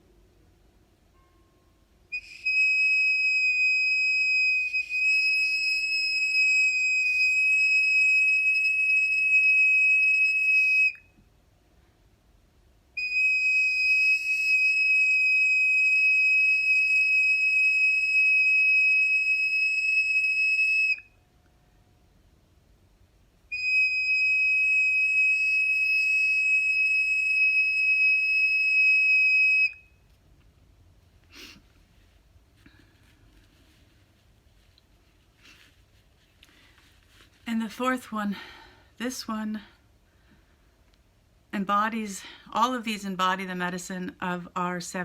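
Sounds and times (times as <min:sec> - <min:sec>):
flute high whistling notes: 0:02.1 - 0:11.1, 0:13.0 - 0:21.1, 0:23.5 - 0:29.9.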